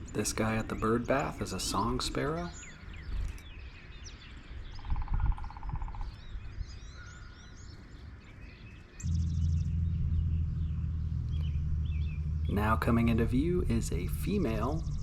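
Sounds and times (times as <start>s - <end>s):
songbirds chirping: 0.0s - 15.0s
rapid low trill: 9.0s - 15.0s
steady low hum: 9.0s - 15.0s.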